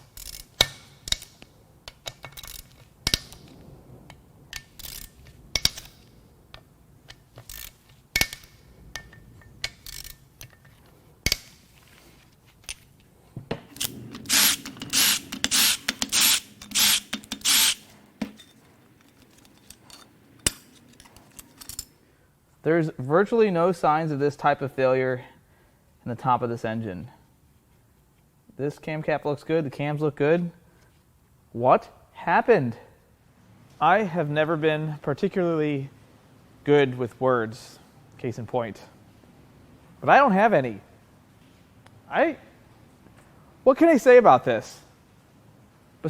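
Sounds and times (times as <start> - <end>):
loud rapid clicks: 13.7 - 18.0
low hum: 13.7 - 21.9
metallic clicks and clinks of tools: 13.8 - 22.0.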